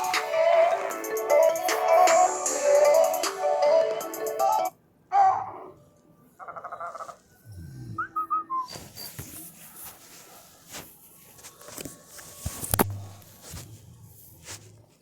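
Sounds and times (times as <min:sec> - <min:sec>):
whistle-like chirping tone: 0:08.0 - 0:09.1.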